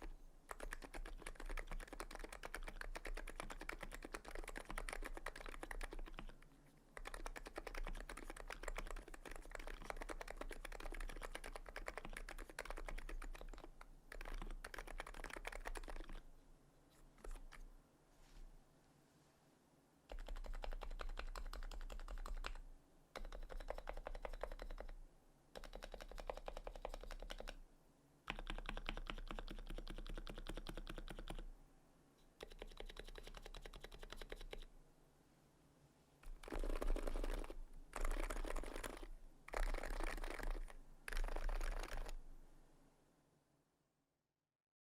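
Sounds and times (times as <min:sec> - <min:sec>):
fast keyboard typing: 0:00.0 - 0:06.4, 0:07.0 - 0:16.3, 0:20.1 - 0:22.6, 0:23.2 - 0:25.0, 0:25.6 - 0:27.6, 0:28.3 - 0:31.5, 0:32.4 - 0:34.7, 0:36.2 - 0:42.2.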